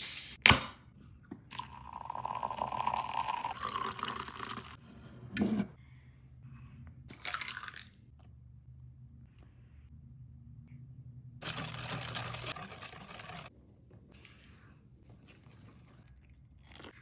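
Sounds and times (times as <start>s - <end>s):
short hiss: 0.0s - 0.4s
liquid pouring into a bowl: 1.6s - 4.8s.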